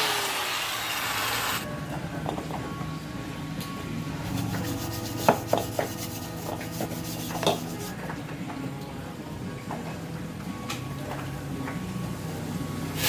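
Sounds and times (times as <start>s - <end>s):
steady low hum: 1.6s - 13.0s
hand tools scraping metal: 4.3s - 8.2s.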